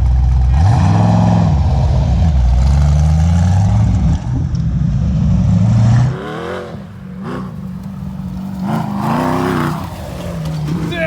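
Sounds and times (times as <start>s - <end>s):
loud engine revving: 0.0s - 11.0s.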